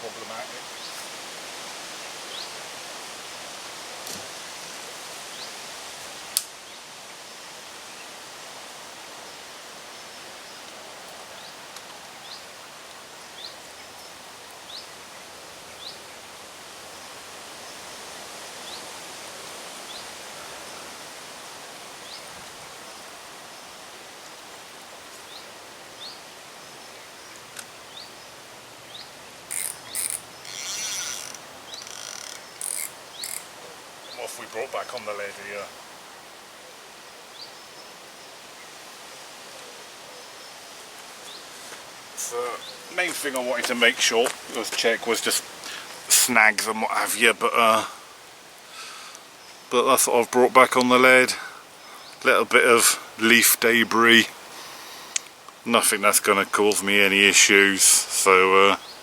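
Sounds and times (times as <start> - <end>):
outdoor background noise: 0.0 - 59.0
fishing reel winding: 29.5 - 33.4.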